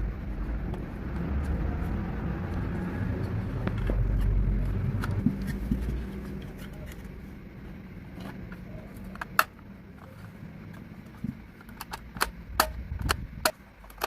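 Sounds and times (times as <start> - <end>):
low rumble: 0.0 - 8.3.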